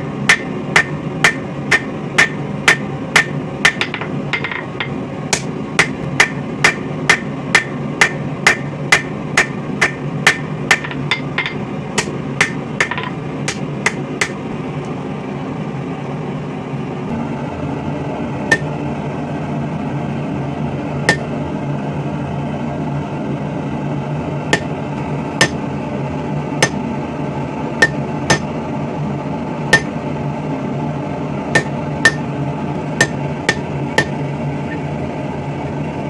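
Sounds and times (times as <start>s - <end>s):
hammer striking steel on anvil: 0.0s - 14.5s, 18.5s - 18.7s, 25.4s - 25.6s, 26.6s - 26.8s, 27.8s - 28.5s, 31.6s - 32.3s, 33.0s - 34.2s
steady low hum: 0.0s - 36.0s.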